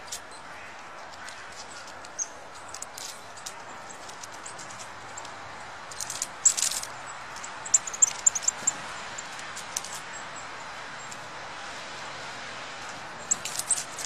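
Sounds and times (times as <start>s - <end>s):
small birds chirping: 0.0s - 11.3s, 13.2s - 14.0s
rustling or crunching: 12.8s - 14.0s.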